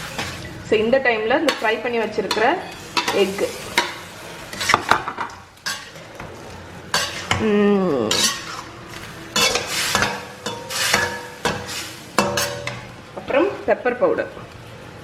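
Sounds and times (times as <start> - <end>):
sauce sizzling and bubbling: 0.0 - 15.0
metal spoon scraping a pan: 1.4 - 7.4, 8.0 - 12.9.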